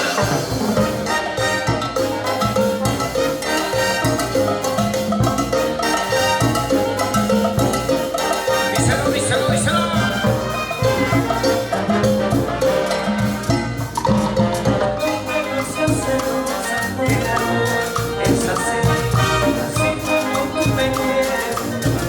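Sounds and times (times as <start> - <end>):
band playing instrumental cumbia: 0.0 - 22.0.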